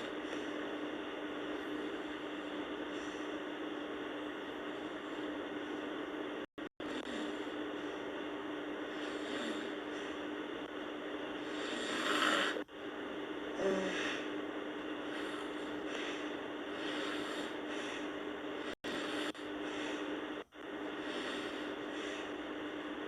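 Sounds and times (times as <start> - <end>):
girl snoring: 6.8 - 7.6, 8.9 - 10.2, 11.4 - 12.7, 13.6 - 14.3, 18.6 - 19.4.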